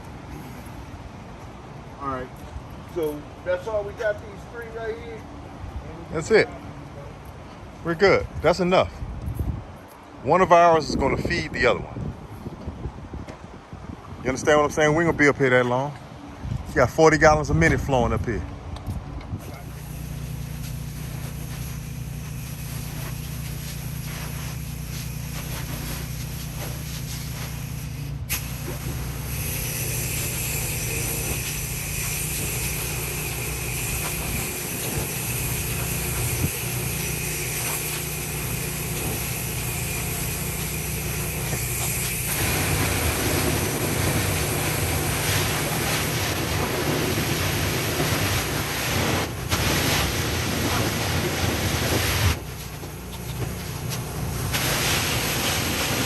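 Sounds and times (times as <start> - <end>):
high-pressure water spraying: 19.4 - 56.0
pressure washer engine running: 19.5 - 56.0.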